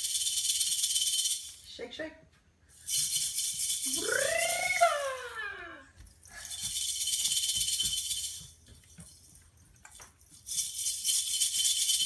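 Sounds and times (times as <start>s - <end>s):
toy rattle shaken: 0.0s - 1.7s, 2.7s - 12.0s
voice calling rising and falling: 3.9s - 5.9s.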